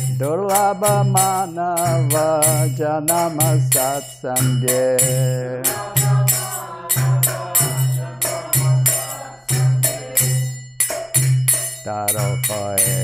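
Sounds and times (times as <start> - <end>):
metal hand cymbals: 0.0 - 13.0
drum beat: 4.5 - 12.1.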